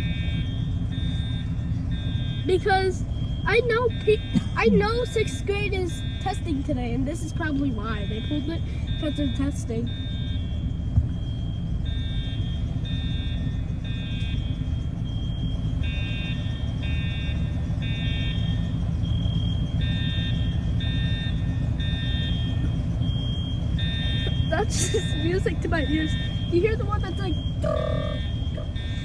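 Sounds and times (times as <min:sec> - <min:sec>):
fire alarm horn blasts: 0:00.0 - 0:29.0
steady high alarm tone: 0:00.0 - 0:29.0.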